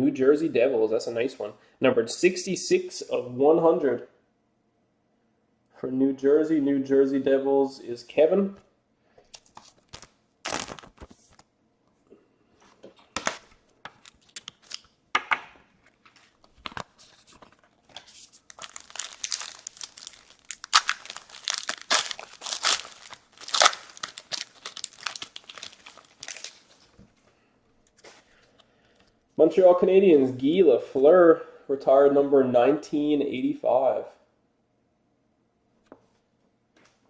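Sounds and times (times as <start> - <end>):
wrapper being torn open: 9.4 - 11.0, 14.0 - 14.9, 18.0 - 26.9
wrapper crinkling: 9.4 - 11.4, 13.5 - 15.0, 15.9 - 27.0.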